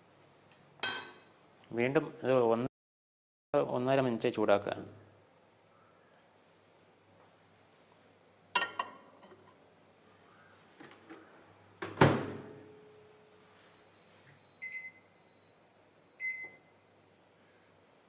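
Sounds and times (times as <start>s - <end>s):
dish clinking: 8.6s - 9.5s
microwave door shutting: 11.8s - 12.6s
keypad beeps: 14.6s - 15.0s, 16.2s - 16.6s.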